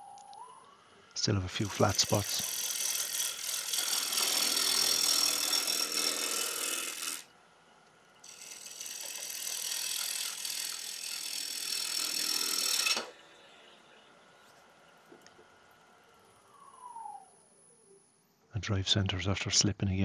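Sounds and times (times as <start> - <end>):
lathe gouge cutting wood rattling: 1.6 - 7.2, 8.3 - 13.1.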